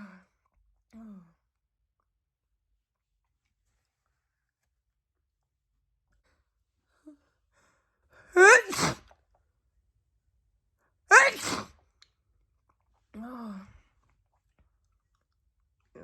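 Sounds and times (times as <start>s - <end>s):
woman sneezing: 8.4s - 9.1s, 11.1s - 11.7s.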